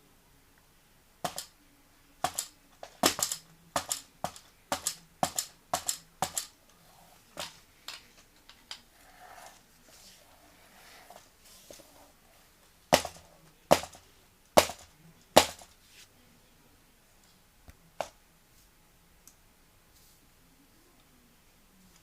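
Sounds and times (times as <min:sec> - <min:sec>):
sharp knocks or clicks: 0:01.2 - 0:01.5, 0:02.2 - 0:06.5.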